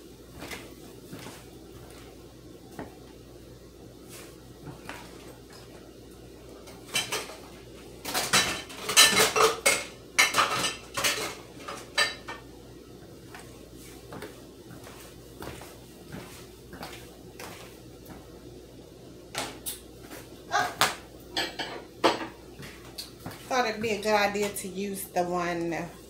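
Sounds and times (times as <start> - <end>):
dishes and metal utensils clattering: 6.7 - 12.4, 21.4 - 22.4.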